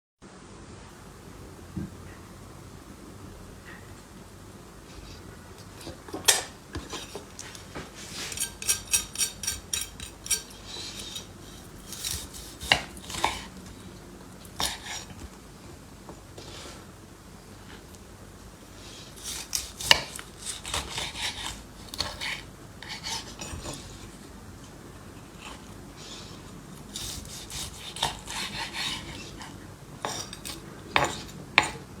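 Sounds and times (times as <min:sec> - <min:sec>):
utensils scraping cookware: 0:06.3 - 0:13.4
utensils clinking on dishes: 0:08.2 - 0:11.3.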